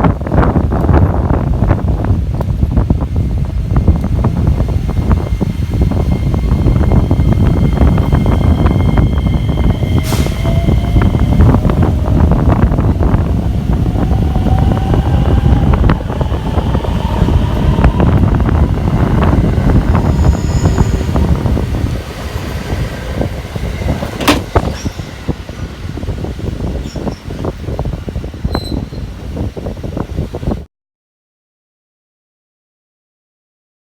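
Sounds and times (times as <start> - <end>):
train rumbling: 0.0 - 30.7
train motor whine: 2.3 - 27.3
rail clicks: 3.8 - 27.6.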